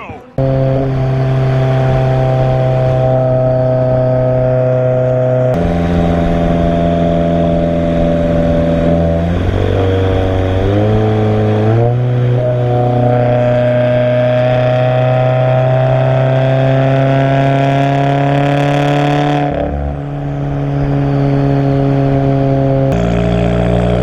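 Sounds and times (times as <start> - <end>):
loud car exhaust drone: 0.0 - 24.0.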